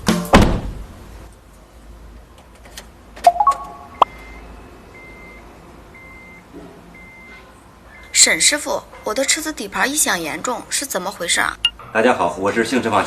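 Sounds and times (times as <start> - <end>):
rising three-note electronic tone: 3.3 - 4.1
high electronic beep: 3.3 - 4.4.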